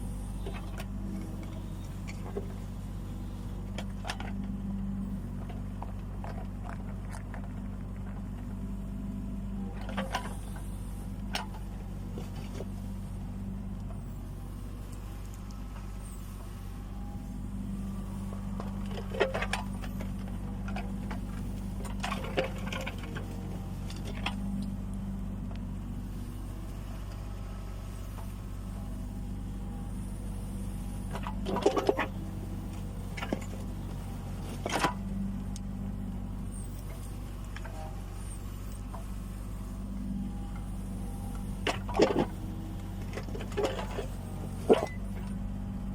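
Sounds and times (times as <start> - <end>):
excavator diesel engine running: 0.0 - 45.9
bucket clanking and scraping: 31.1 - 32.2.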